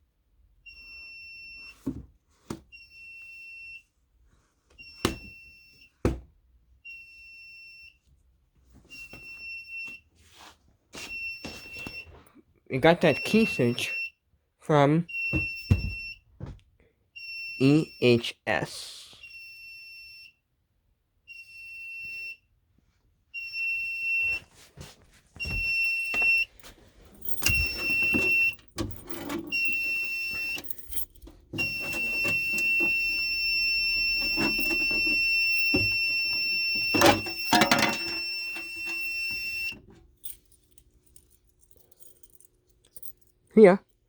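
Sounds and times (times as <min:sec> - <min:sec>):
high-pitched alarm beeping: 0:13.0 - 0:14.1, 0:25.4 - 0:26.5, 0:27.2 - 0:39.8
keys clinking: 0:25.4 - 0:43.3.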